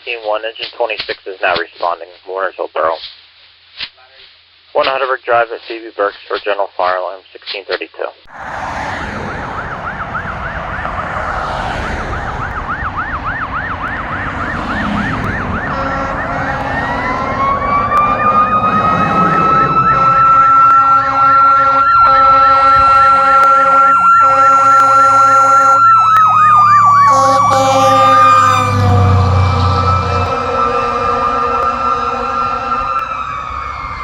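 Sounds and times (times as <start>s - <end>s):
electronic siren yelping: 8.3s - 34.0s
mechanical siren wailing: 8.3s - 34.0s.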